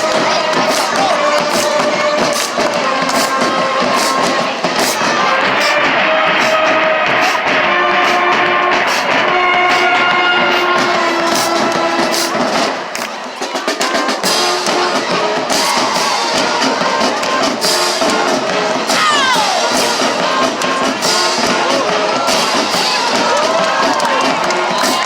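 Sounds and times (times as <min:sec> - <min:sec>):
busy drum beat: 0:00.0 - 0:25.0.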